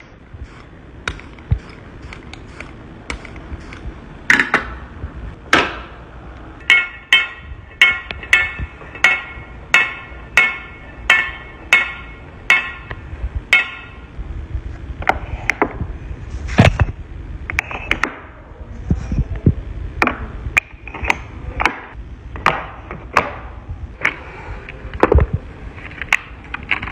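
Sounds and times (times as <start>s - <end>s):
metallic strikes with short ring: 6.6s - 12.9s.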